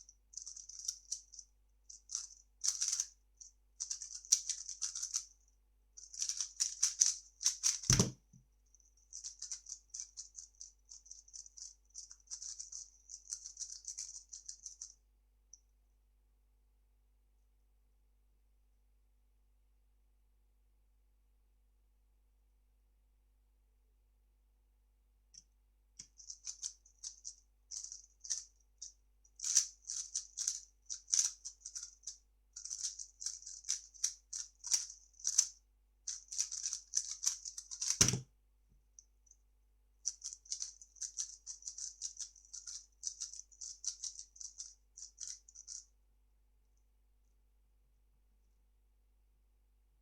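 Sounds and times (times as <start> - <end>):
puzzle cube clicking and rattling: 0.4 - 3.1, 3.8 - 5.4, 6.0 - 8.2, 9.0 - 14.9, 26.0 - 28.5, 29.4 - 35.5, 36.1 - 38.2, 40.1 - 45.8.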